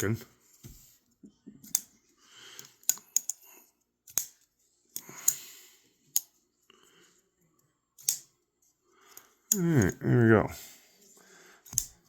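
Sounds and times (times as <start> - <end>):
folding knife blade clicking: 8.0 - 8.3.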